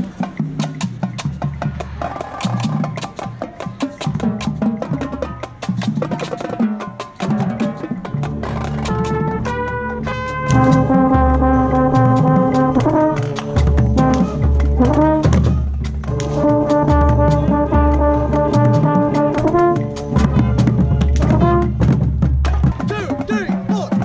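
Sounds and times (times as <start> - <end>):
drum strikes: 0.0 - 24.0
brass section chords: 8.2 - 23.6.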